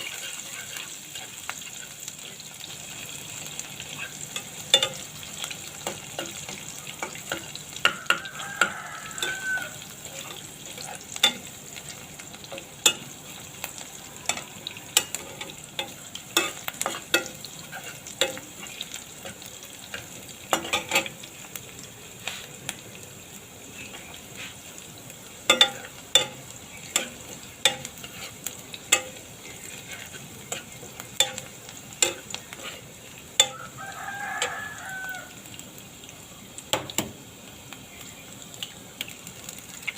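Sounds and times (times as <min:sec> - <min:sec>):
food sizzling in a pan: 0:00.0 - 0:39.9
utensil scraping a pan: 0:27.0 - 0:33.5.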